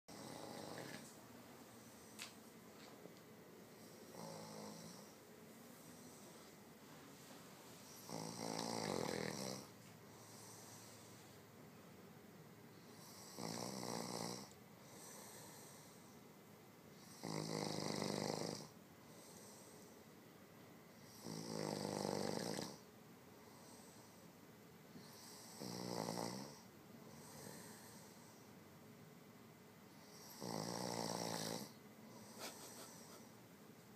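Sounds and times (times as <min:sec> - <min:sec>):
man snoring heavily: 0:00.1 - 0:01.0, 0:03.8 - 0:05.2, 0:07.9 - 0:11.0, 0:12.9 - 0:16.0, 0:17.0 - 0:19.7, 0:21.0 - 0:22.8, 0:25.0 - 0:28.2, 0:30.1 - 0:33.0
soft breaths: 0:00.1 - 0:11.8, 0:14.4 - 0:16.4, 0:19.0 - 0:20.2, 0:22.8 - 0:25.6, 0:26.4 - 0:28.8.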